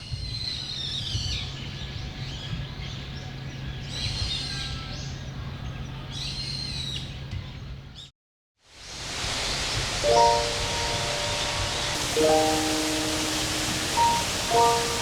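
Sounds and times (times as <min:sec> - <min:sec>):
wild birds calling: 0:10.2 - 0:15.0.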